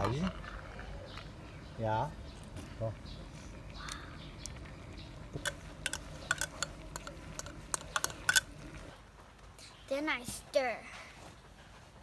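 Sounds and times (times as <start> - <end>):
spoon scraping metal pot: 5.5 - 8.8.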